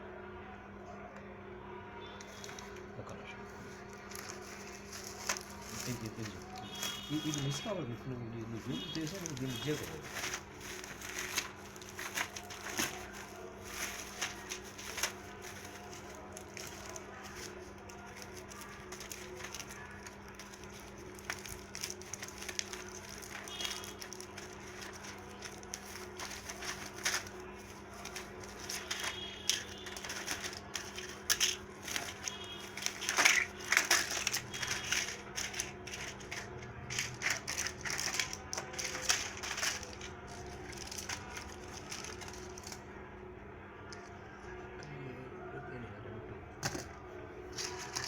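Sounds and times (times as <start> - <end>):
packaging crinkling and rattling: 3.7 - 42.9, 47.5 - 48.0.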